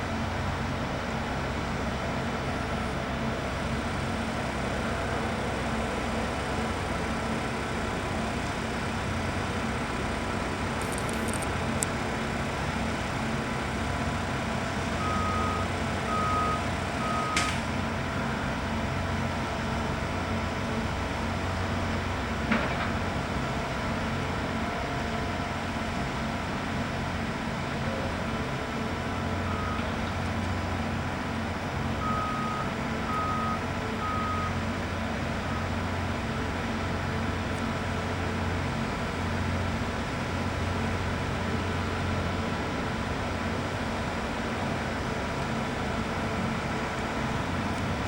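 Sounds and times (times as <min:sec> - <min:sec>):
heavy diesel machinery drone: 0:00.0 - 0:48.0
reversing alarm beeping: 0:15.0 - 0:17.6, 0:32.0 - 0:34.6.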